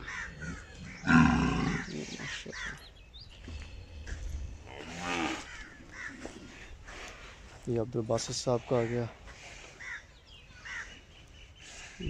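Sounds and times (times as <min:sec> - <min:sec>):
cattle mooing: 0:04.6 - 0:05.6.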